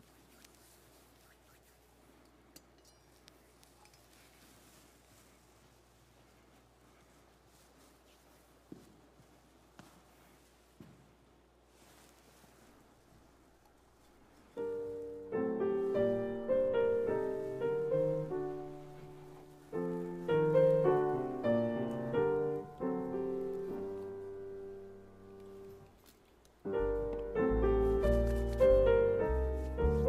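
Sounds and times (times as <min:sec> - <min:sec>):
slow solo piano: 0:14.5 - 0:26.0, 0:26.6 - 0:30.0
deep piano bass notes: 0:26.7 - 0:30.0.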